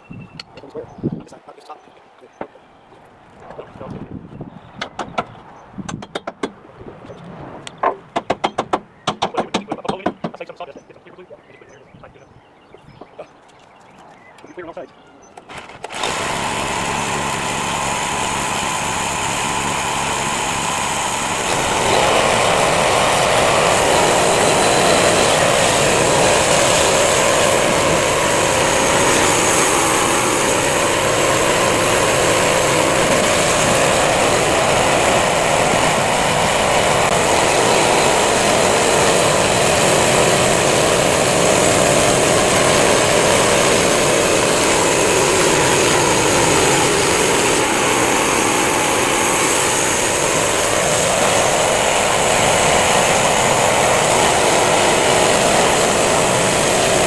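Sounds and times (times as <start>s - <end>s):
band sawmill running: 15.5s - 57.0s.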